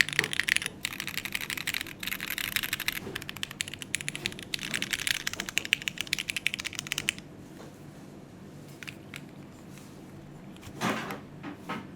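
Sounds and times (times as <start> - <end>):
mechanical keyboard key clacks: 0.0 - 7.2.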